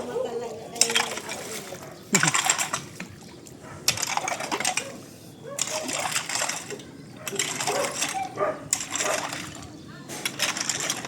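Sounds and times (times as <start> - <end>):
rocks and gravel clattering: 5.6 - 11.0.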